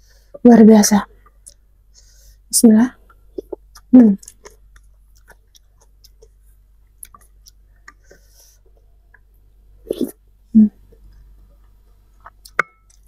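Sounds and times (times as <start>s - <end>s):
mouth clicks and chewing: 3.1s - 9.3s, 10.9s - 13.0s.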